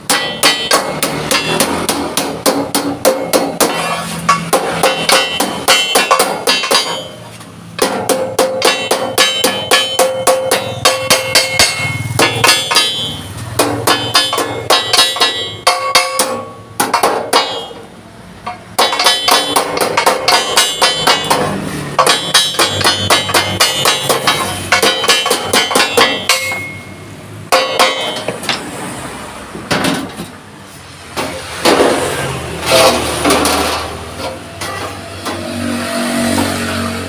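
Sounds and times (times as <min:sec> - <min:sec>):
hammer ringing on steel plate: 0:00.0 - 0:28.6.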